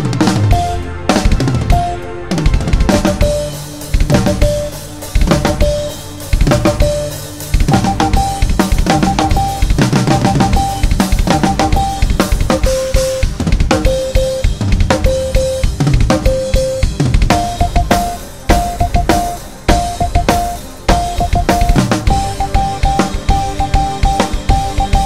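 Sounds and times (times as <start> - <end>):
drum kit playing: 0.0 - 25.0
electronic morse code beeps: 6.6 - 13.0, 13.8 - 25.0.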